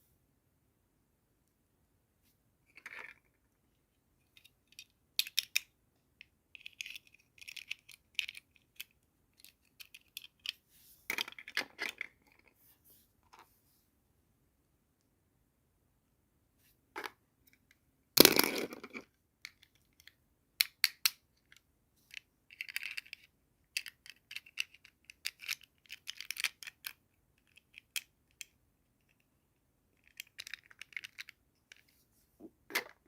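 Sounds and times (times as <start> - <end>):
plastic toy pieces clicking: 4.4 - 5.7, 6.5 - 10.6, 18.2 - 28.5, 29.9 - 31.8.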